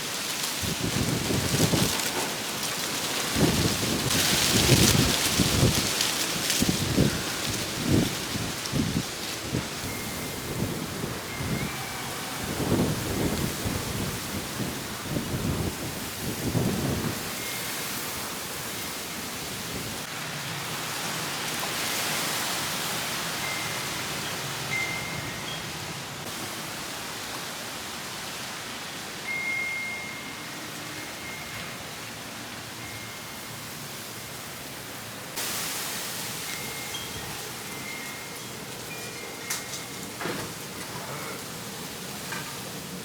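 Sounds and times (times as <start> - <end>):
gusty wind rushing: 3.3 - 20.1.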